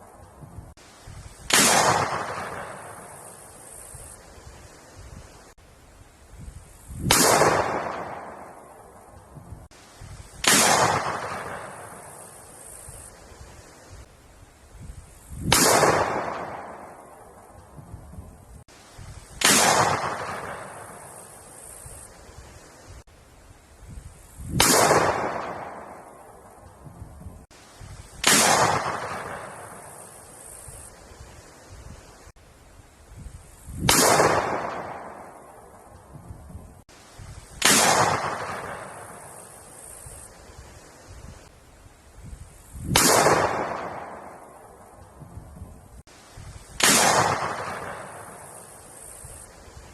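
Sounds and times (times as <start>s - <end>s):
gunshots with echo: 1.5s - 3.3s, 7.0s - 8.6s, 10.4s - 12.3s, 15.4s - 17.1s, 19.4s - 21.1s, 24.6s - 26.1s, 28.2s - 30.0s, 33.8s - 35.4s, 37.6s - 39.4s, 42.9s - 44.6s, 46.8s - 48.6s.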